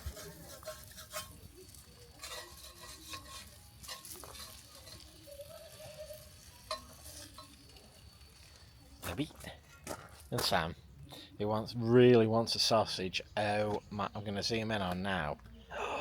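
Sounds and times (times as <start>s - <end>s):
cooking utensil clicks and scrapes: 0.0s - 9.8s
sausages frying: 0.0s - 11.2s.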